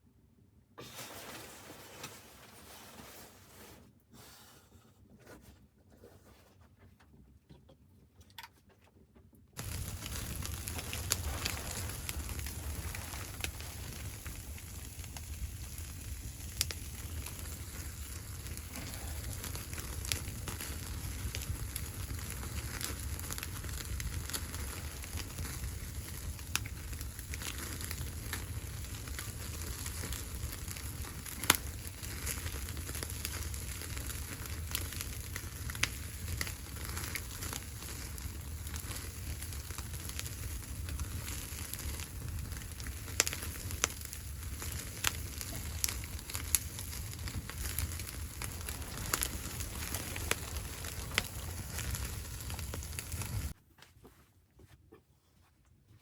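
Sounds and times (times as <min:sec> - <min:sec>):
wood fire crackling: 0:00.8 - 0:04.5, 0:09.6 - 0:53.6
sharp fire pops: 0:09.6 - 0:53.6.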